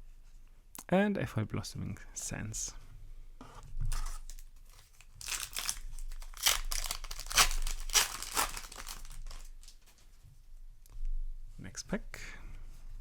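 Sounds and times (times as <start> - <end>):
foil wrapper crinkling and tearing: 3.9 - 10.0.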